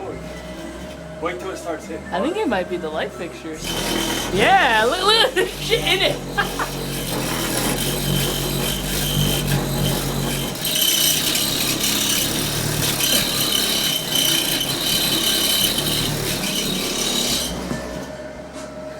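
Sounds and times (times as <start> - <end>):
loose fittings buzzing and rattling: 3.6 - 18.2.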